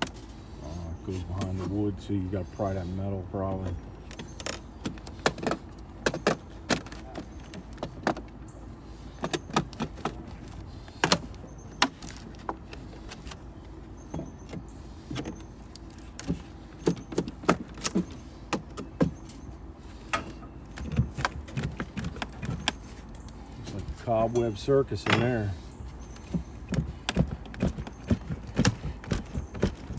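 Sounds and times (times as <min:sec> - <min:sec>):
steady low hum: 0:00.0 - 0:29.9
metallic clinks and scrapes: 0:23.0 - 0:25.7.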